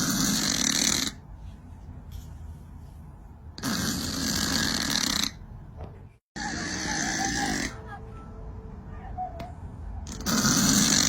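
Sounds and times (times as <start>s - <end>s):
cat snoring: 0.0s - 1.2s, 3.6s - 5.4s, 10.1s - 11.0s.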